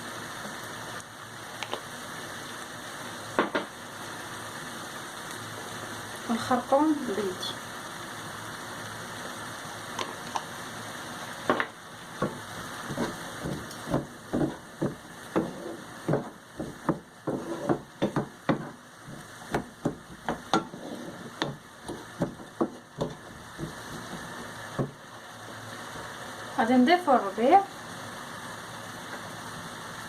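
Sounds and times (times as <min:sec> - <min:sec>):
low sizzle: 0:00.0 - 0:30.0
utensil scraping frying pan: 0:11.5 - 0:25.0.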